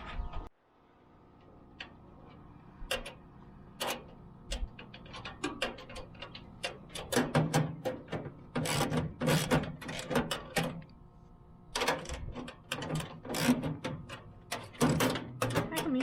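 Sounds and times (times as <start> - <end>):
ratchet and wrench clicking: 8.6 - 10.7, 11.8 - 16.0.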